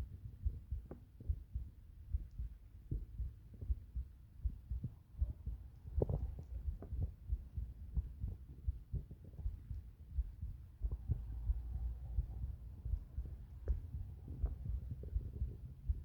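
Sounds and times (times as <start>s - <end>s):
heartbeat thumps: 0.0s - 16.0s
stomach sounds: 5.2s - 7.2s, 12.1s - 16.0s.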